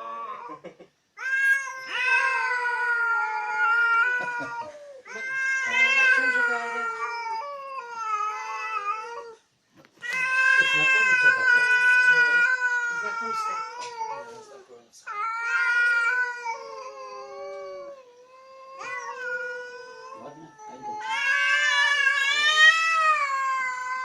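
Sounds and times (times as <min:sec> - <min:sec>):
cat yowling: 0:00.0 - 0:09.4, 0:10.0 - 0:24.0.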